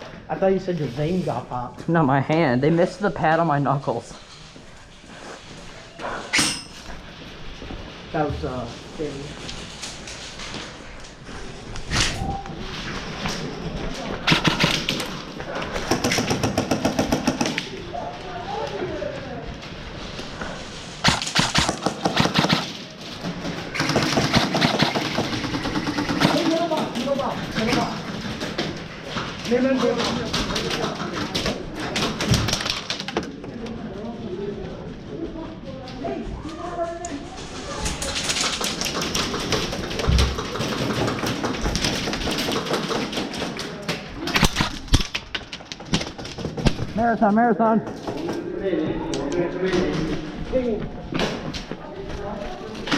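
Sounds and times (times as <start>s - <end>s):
airsoft guns firing rapid shots: 14.2s - 15.1s, 15.8s - 17.6s, 21.0s - 22.8s, 23.7s - 26.8s
loud cracks: 14.2s - 17.8s, 21.0s - 27.2s, 38.3s - 46.8s.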